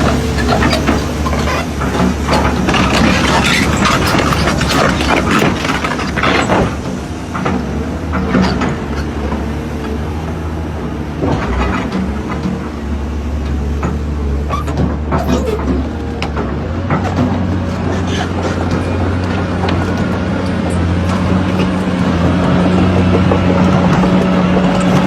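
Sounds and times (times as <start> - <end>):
diesel engine idling: 12.0 - 25.0.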